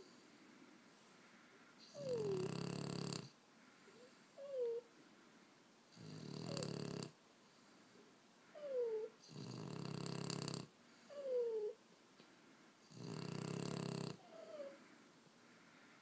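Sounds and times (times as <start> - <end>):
dog snoring: 1.8 - 3.4, 5.9 - 7.2, 8.5 - 11.8, 12.8 - 14.8.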